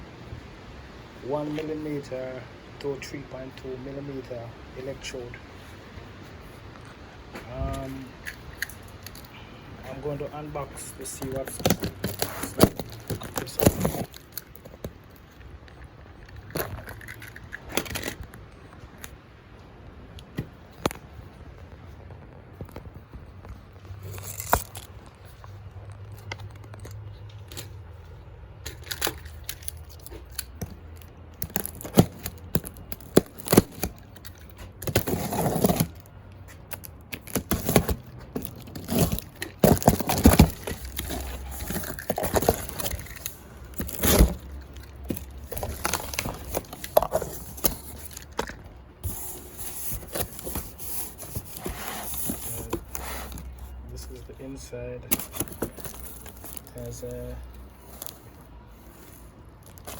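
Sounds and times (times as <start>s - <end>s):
cardboard flaps scraping and crinkling: 9.9s - 14.9s, 31.5s - 36.1s, 37.1s - 54.1s
tape tearing: 9.9s - 15.2s, 23.9s - 25.2s, 28.6s - 53.8s, 55.1s - 57.0s.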